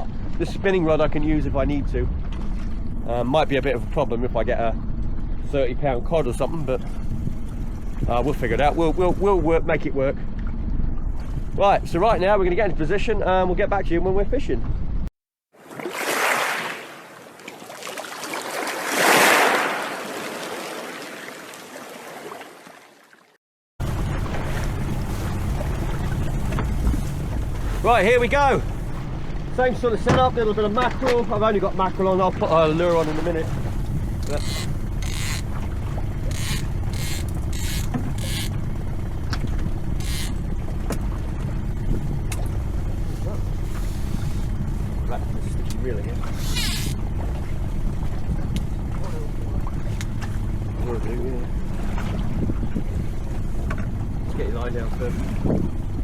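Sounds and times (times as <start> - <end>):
outboard engine running: 0.0 - 13.7, 23.8 - 56.0
sea water rushing: 15.6 - 56.0.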